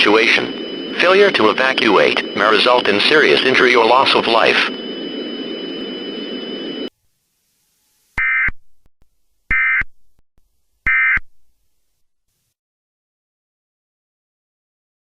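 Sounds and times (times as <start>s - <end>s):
screeching data bursts: 0.0s - 6.8s, 9.5s - 9.9s, 10.9s - 11.2s.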